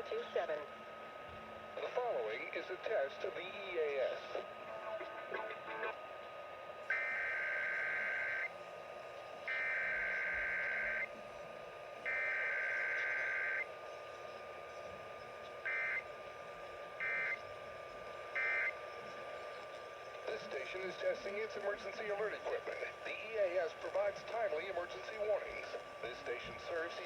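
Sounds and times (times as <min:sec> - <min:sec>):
radio hiss: 0:01.7 - 0:06.0, 0:09.4 - 0:27.0
buzzy digital data tones: 0:06.9 - 0:08.5, 0:09.4 - 0:11.2, 0:12.0 - 0:27.0
faint steady whistle: 0:06.9 - 0:08.5, 0:12.1 - 0:13.7, 0:15.6 - 0:16.1, 0:18.4 - 0:18.8.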